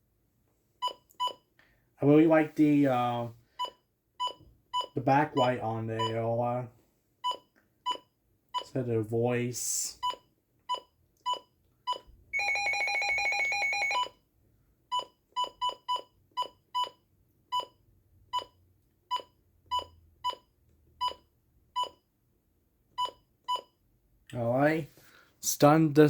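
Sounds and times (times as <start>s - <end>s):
short beeps: 12.4s - 14.1s.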